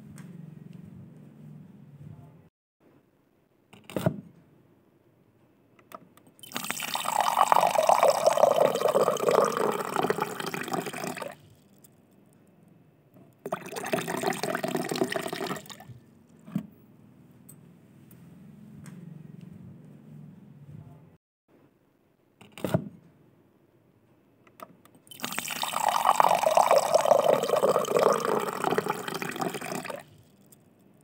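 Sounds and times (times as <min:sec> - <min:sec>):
water pouring: 0:06.4 - 0:11.4, 0:13.5 - 0:16.0, 0:25.1 - 0:30.2.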